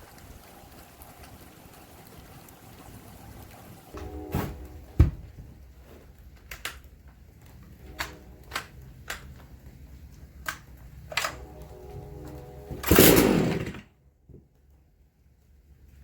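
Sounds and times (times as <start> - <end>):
low steady hum: 3.4 - 16.0.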